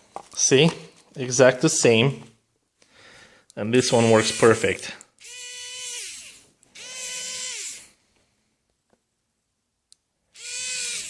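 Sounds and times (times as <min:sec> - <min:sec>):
electric screwdriver motor whine: 0:04.1 - 0:08.0, 0:10.4 - 0:11.0.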